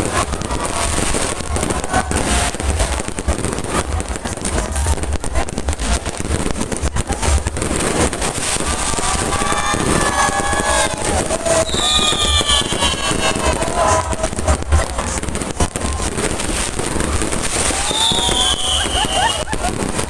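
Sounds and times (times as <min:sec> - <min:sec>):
firework bangs and crackles: 0:00.0 - 0:20.0
whistles sliding down in pitch: 0:09.5 - 0:13.9, 0:17.8 - 0:19.4.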